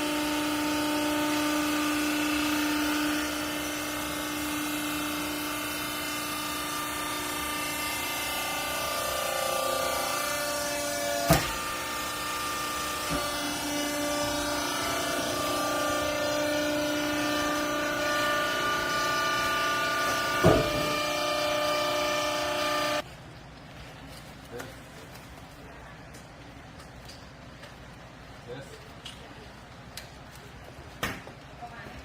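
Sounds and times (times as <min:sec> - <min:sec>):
hydraulic baler whining: 0:00.0 - 0:23.0.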